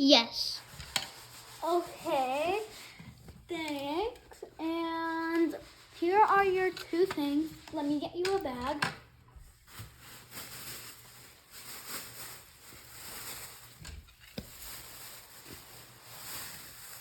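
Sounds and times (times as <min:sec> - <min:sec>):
rustling of bag: 0:09.5 - 0:17.0.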